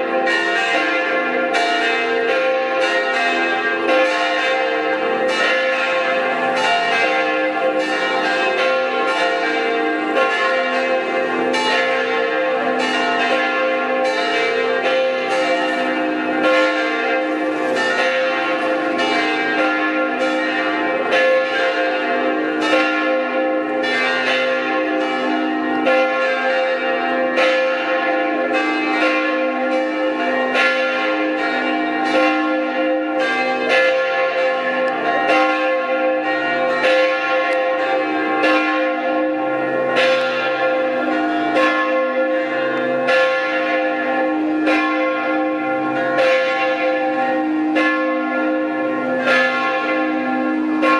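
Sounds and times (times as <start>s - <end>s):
church bells ringing: 0.0s - 50.9s.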